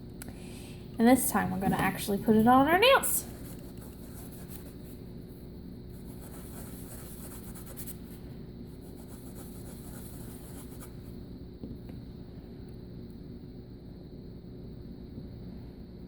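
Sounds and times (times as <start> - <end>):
faint hum: 0.0 - 16.0.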